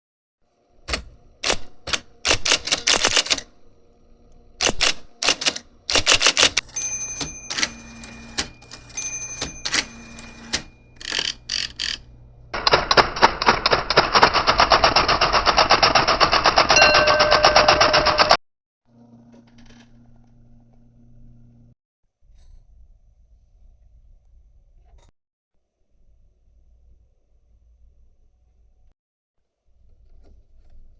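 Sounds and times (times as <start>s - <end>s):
electric typewriter keystrokes: 0.8s - 3.7s, 4.3s - 18.4s.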